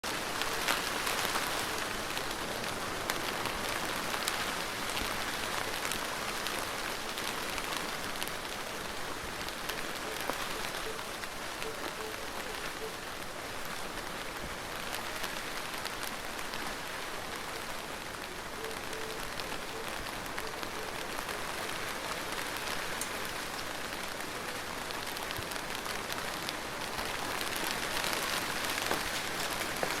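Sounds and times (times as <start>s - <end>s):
gentle rain falling: 0.0s - 30.0s.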